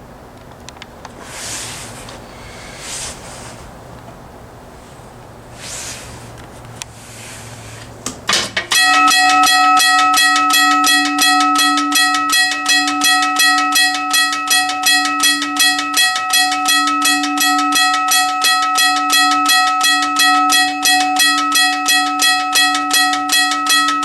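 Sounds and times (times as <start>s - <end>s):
railroad crossing bell ringing: 2.2s - 3.2s, 8.7s - 24.0s.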